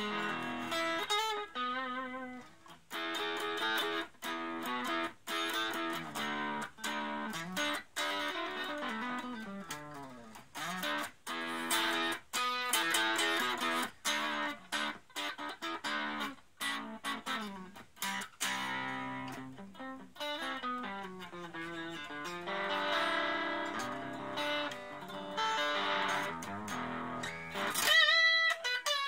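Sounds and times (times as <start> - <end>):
electric guitar playing: 0.0 - 29.0.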